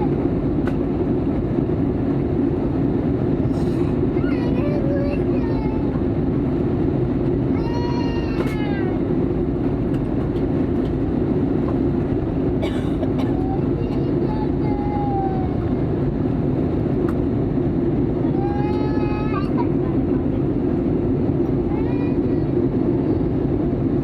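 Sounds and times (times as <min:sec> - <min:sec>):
airliner cabin noise: 0:00.0 - 0:24.0
child crying: 0:04.2 - 0:06.0, 0:07.6 - 0:09.0, 0:12.6 - 0:15.8, 0:18.3 - 0:19.8.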